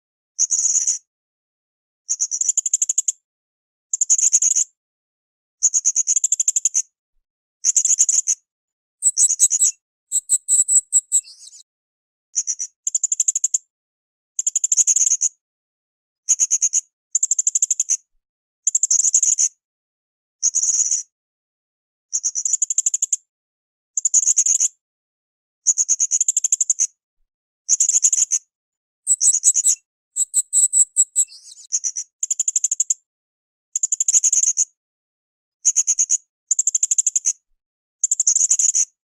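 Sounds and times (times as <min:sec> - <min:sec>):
parrot high-pitched trilled calls: 0:09.0 - 0:11.3, 0:29.1 - 0:31.6.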